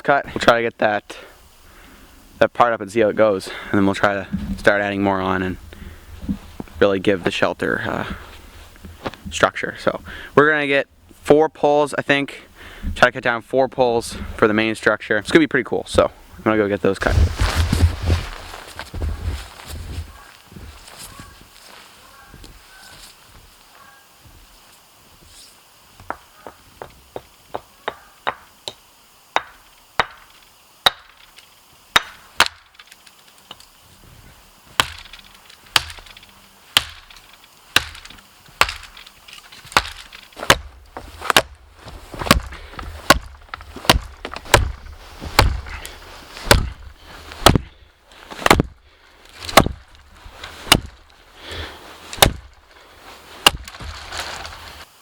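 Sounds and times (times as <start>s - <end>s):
axe chopping a tree: 29.4s - 31.2s, 31.9s - 32.8s, 34.8s - 52.7s, 53.4s - 54.0s
deep thud: 39.7s - 45.8s, 46.4s - 47.8s, 48.4s - 48.8s, 49.5s - 49.9s, 50.6s - 51.0s, 52.2s - 52.6s, 53.4s - 54.1s.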